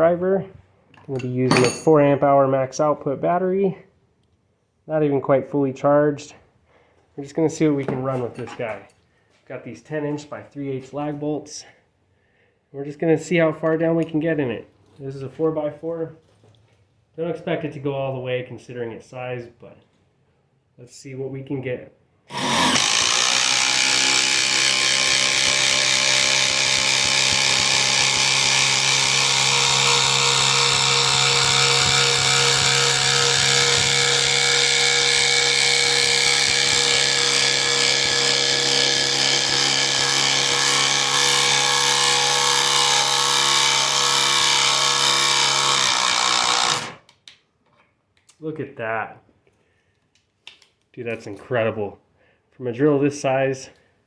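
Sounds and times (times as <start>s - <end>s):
impact driver hammering: 22.3s - 46.9s.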